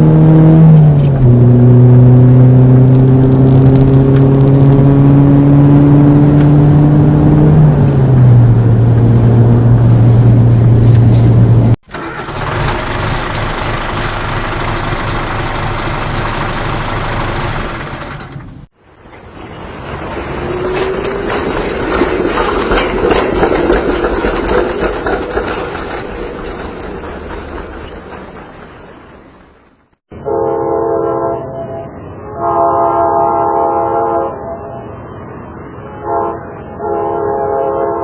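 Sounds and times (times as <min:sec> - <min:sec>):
train wheels clattering: 0:20.1 - 0:29.7
train horn blasts: 0:30.2 - 0:34.9, 0:35.9 - 0:38.0.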